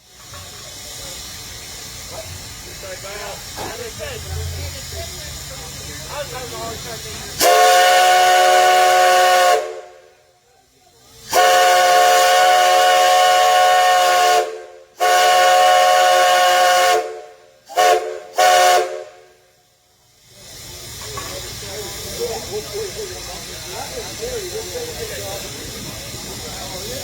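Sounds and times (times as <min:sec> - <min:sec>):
steam locomotive whistle: 0:07.4 - 0:10.2, 0:11.3 - 0:19.5.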